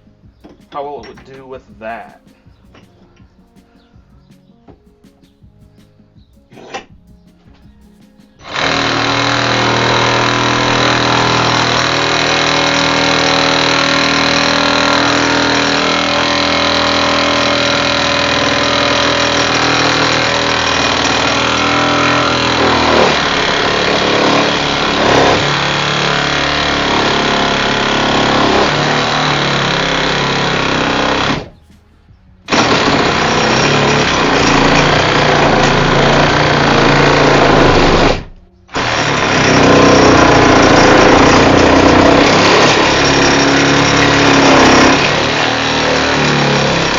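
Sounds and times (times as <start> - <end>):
reciprocating saw cutting wood: 8.4 - 31.6, 32.5 - 46.9.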